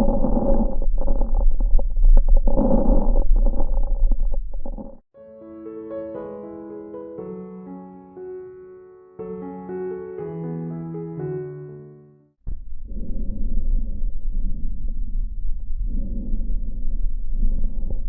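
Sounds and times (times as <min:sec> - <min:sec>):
lung sounds through stethoscope: 0:00.0 - 0:05.0, 0:12.5 - 0:18.0
gentle piano music: 0:05.2 - 0:12.3.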